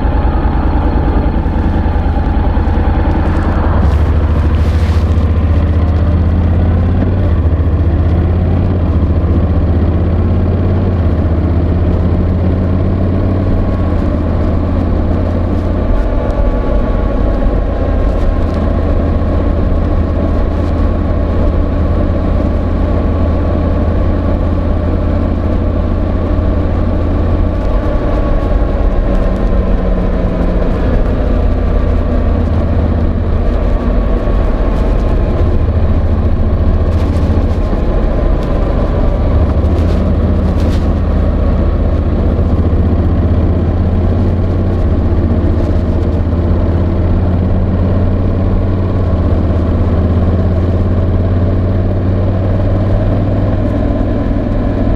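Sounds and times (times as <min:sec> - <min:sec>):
motorcycle engine running: 0:00.0 - 0:54.9
microphone rubbing in jacket pocket: 0:03.1 - 0:06.8, 0:27.1 - 0:42.4.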